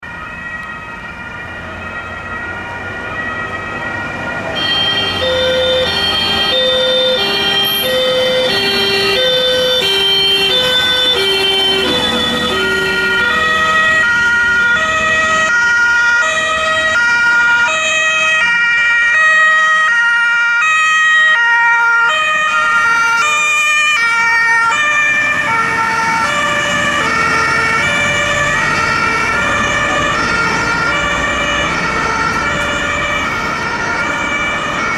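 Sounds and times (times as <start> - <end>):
two-tone fire engine sirens: 0.0 - 34.9
vehicle engines running: 0.4 - 17.6, 22.8 - 34.9.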